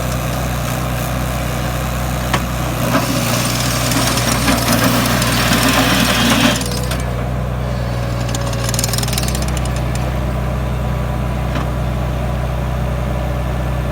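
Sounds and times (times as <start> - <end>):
diesel engine running: 0.0 - 13.9
faint clicks: 8.0 - 10.2.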